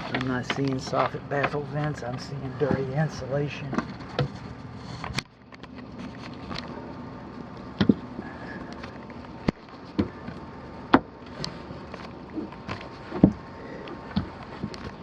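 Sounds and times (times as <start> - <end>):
steady low hum: 0.0 - 15.0
knocks and clicks of movement: 8.7 - 15.0.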